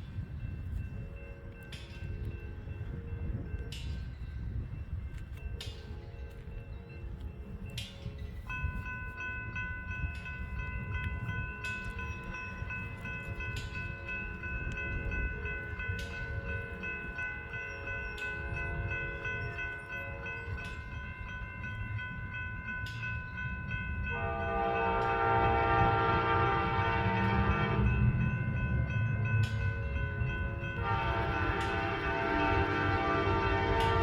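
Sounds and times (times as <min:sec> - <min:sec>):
locomotive rumble: 0:23.4 - 0:34.0
train air horn blasts: 0:24.1 - 0:27.9, 0:30.8 - 0:34.0.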